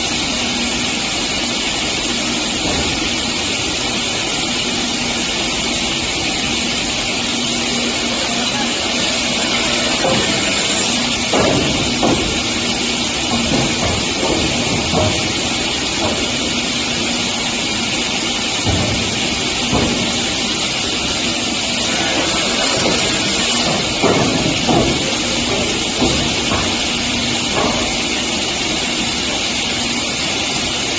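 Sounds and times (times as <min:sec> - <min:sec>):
wood saw machine hissing: 0:06.4 - 0:30.9
boards knocking in machine: 0:07.7 - 0:30.6.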